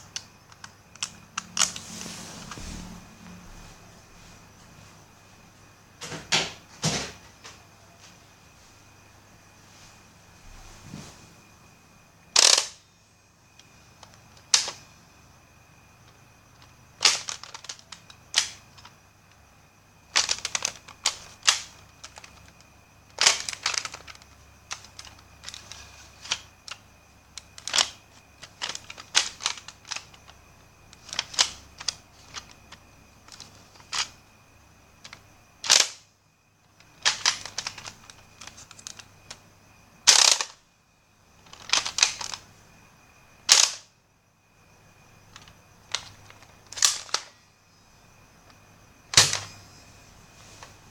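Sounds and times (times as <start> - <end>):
toy blasters clicking and firing: 12.4 - 12.8, 14.5 - 14.8, 16.6 - 18.9, 20.1 - 22.6, 23.2 - 26.8, 27.6 - 30.2, 35.1 - 36.0, 37.0 - 39.4, 40.1 - 40.6, 43.5 - 43.9.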